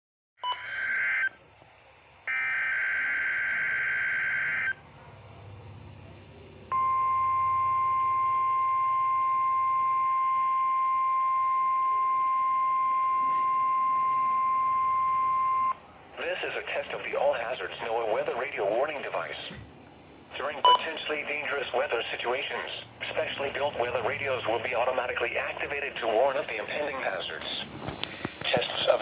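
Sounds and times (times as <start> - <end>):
steady warning alarm tone: 0.4 - 1.4, 2.3 - 4.9, 6.7 - 15.8.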